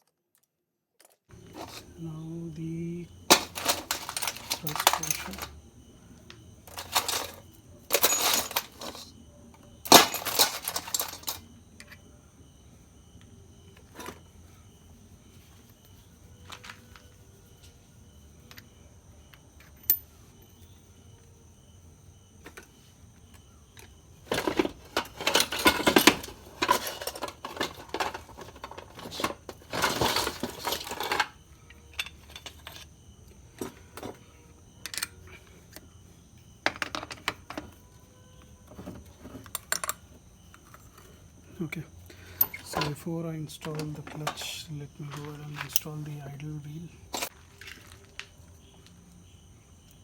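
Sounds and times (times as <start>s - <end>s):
metal parts and tools clinking: 1.0s - 2.3s, 3.2s - 5.6s, 6.6s - 12.0s, 23.8s - 32.9s, 33.6s - 34.2s, 34.8s - 35.8s, 36.6s - 41.2s, 42.1s - 49.0s.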